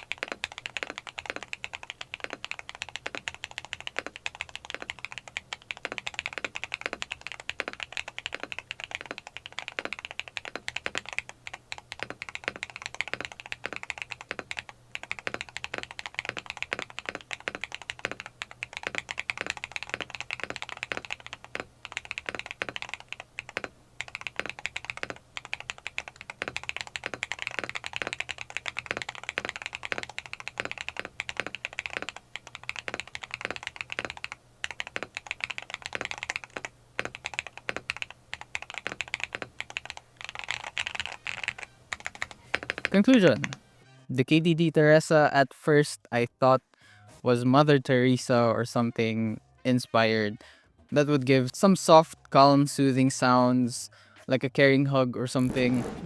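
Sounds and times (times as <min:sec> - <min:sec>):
fast typing on mechanical keyboard: 0:00.0 - 0:43.8.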